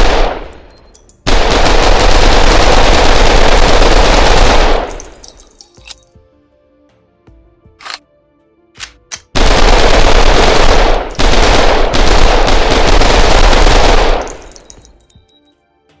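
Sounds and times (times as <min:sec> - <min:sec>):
submachine gun firing: 0:00.0 - 0:05.2, 0:08.8 - 0:14.8.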